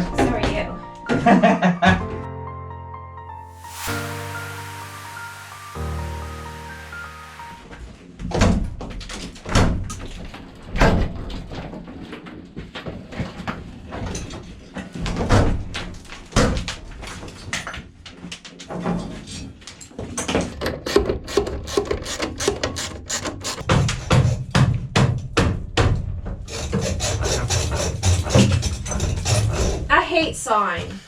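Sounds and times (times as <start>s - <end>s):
demolition knocks and thuds: 8.2s - 17.7s
hand saw strokes: 20.6s - 24.3s, 26.5s - 29.9s.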